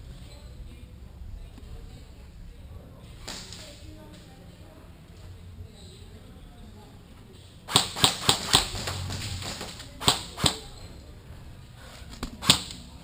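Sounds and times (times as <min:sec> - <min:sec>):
airsoft gun shots: 0:07.7 - 0:10.7, 0:12.3 - 0:12.8.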